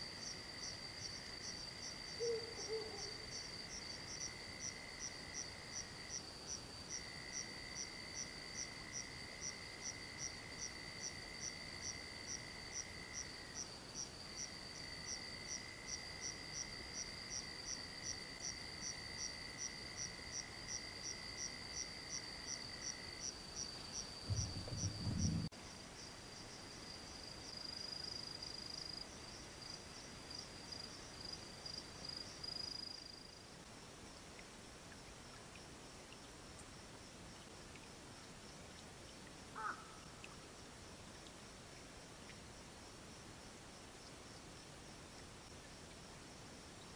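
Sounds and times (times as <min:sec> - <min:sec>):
lower insect trill: 0:00.0 - 0:33.4
insect chirping: 0:00.0 - 0:46.9
low rumble: 0:24.3 - 0:25.5.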